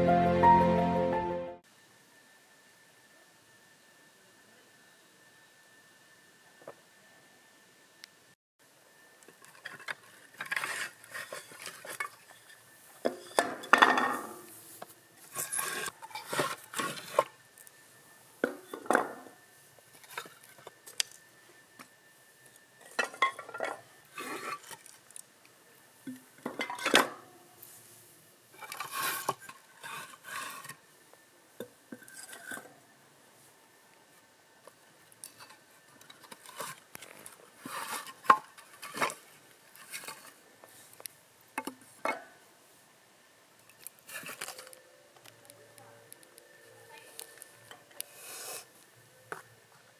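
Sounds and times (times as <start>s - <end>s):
dishes and pots clattering: 13.1s - 14.4s.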